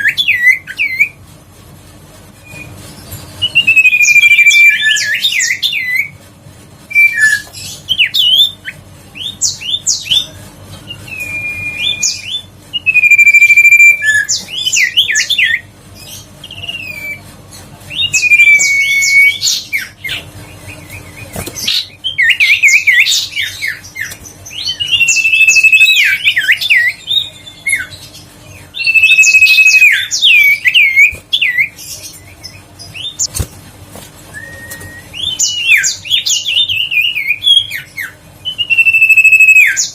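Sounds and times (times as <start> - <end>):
bird singing whistled phrases: 10.9 - 15.7, 18.0 - 20.0, 20.7 - 27.9, 28.8 - 33.3, 34.3 - 39.9.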